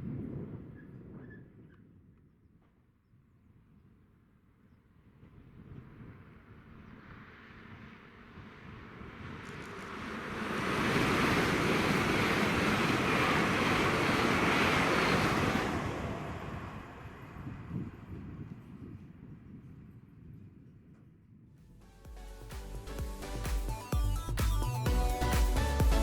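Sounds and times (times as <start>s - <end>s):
train passing at speed: 7.3s - 18.7s.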